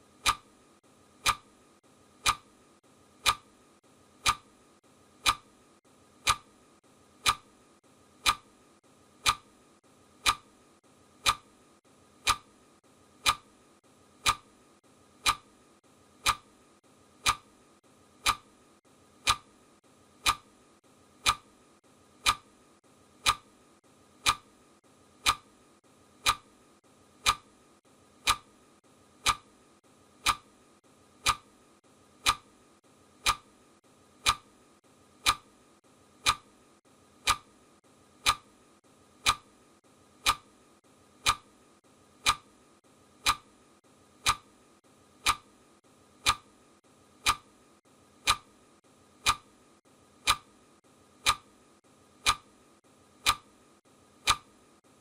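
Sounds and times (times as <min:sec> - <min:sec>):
clock ticking: 0:00.1 - 0:00.6, 0:01.2 - 0:01.6, 0:02.2 - 0:02.6, 0:03.2 - 0:03.6, 0:04.2 - 0:04.6, 0:05.2 - 0:05.6, 0:06.2 - 0:07.6, 0:08.2 - 0:08.6, 0:09.2 - 0:09.6, 0:10.2 - 0:10.6, 0:11.2 - 0:11.6, 0:12.2 - 0:12.6, 0:13.2 - 0:13.6, 0:14.2 - 0:14.6, 0:15.2 - 0:15.6, 0:16.2 - 0:16.6, 0:17.2 - 0:17.6, 0:18.2 - 0:18.6, 0:19.2 - 0:19.6, 0:20.2 - 0:20.6, 0:21.2 - 0:21.6, 0:22.2 - 0:22.6, 0:23.2 - 0:23.6, 0:24.2 - 0:24.6, 0:25.2 - 0:25.6, 0:26.2 - 0:26.6, 0:27.2 - 0:27.6, 0:28.2 - 0:28.6, 0:29.2 - 0:29.6, 0:30.2 - 0:30.6, 0:31.2 - 0:31.6, 0:32.2 - 0:32.6, 0:33.2 - 0:33.6, 0:34.2 - 0:34.6, 0:35.2 - 0:35.6, 0:36.2 - 0:36.6, 0:37.2 - 0:37.6, 0:38.2 - 0:38.6, 0:39.2 - 0:39.6, 0:40.2 - 0:40.6, 0:41.2 - 0:41.6, 0:42.2 - 0:42.6, 0:43.2 - 0:43.6, 0:44.2 - 0:44.5, 0:45.2 - 0:45.6, 0:46.2 - 0:46.6, 0:47.2 - 0:47.6, 0:48.2 - 0:48.6, 0:49.2 - 0:49.6, 0:50.2 - 0:50.6, 0:51.2 - 0:51.6, 0:52.2 - 0:52.6, 0:53.2 - 0:53.6, 0:54.2 - 0:54.6.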